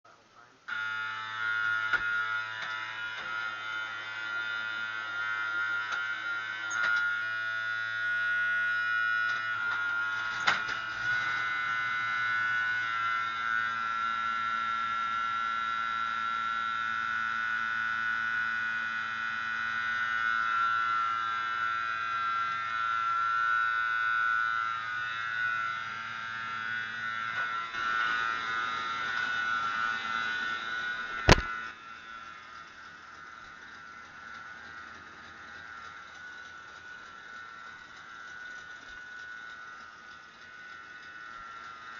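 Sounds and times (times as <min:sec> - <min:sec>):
steady electric buzz: 0:00.4 - 0:41.9
sharp click: 0:31.2 - 0:31.5.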